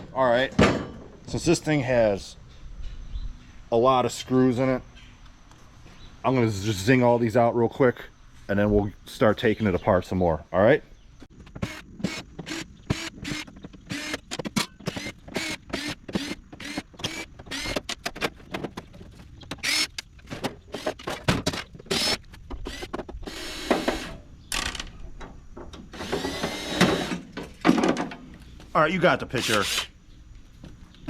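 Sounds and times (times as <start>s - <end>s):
power driver whirring: 11.5s - 17.9s, 25.9s - 27.2s.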